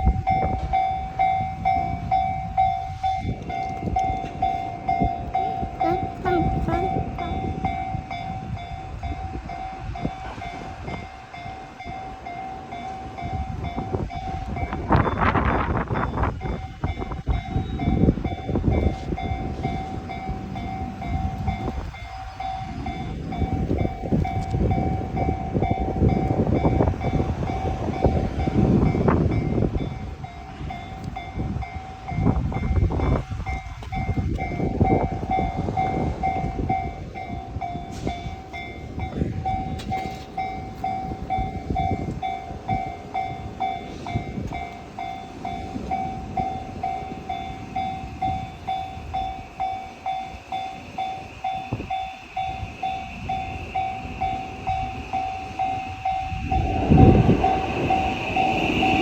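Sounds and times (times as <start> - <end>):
level crossing warning bell: 0.0 - 59.0
train wheels clattering on rails: 0.0 - 59.0.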